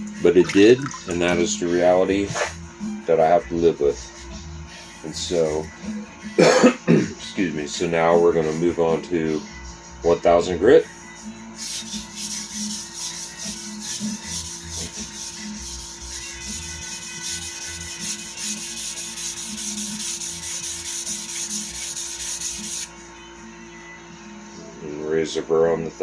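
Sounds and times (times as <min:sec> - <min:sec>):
knife scraping on whetstone: 0:11.6 - 0:22.9.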